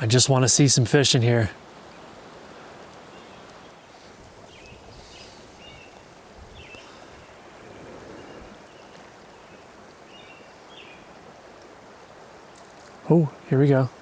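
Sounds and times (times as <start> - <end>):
river water over rocks: 0.0 - 14.0.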